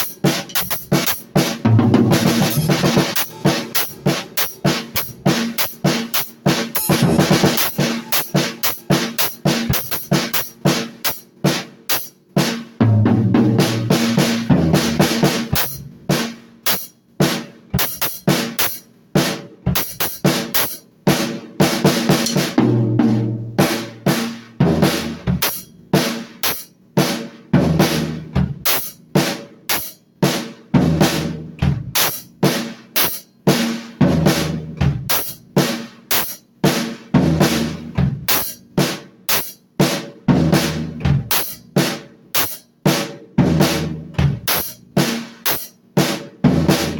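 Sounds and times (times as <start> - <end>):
drum kit playing fast beat: 0.0 - 46.9
cymbal crashes: 2.0 - 10.5.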